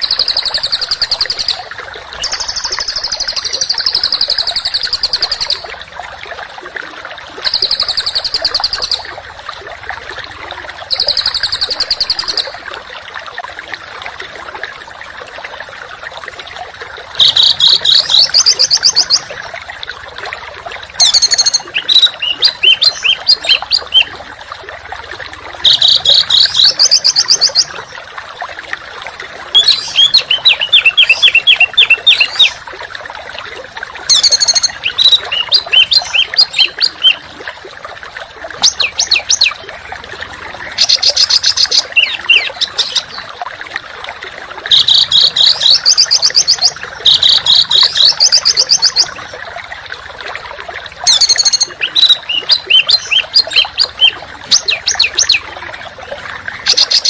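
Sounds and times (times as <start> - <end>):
songbird trilling: 0.0 - 1.6, 2.2 - 5.7, 7.5 - 9.0, 10.9 - 12.5, 21.0 - 24.1, 29.6 - 32.6, 34.1 - 37.2, 40.8 - 43.1, 44.7 - 49.1.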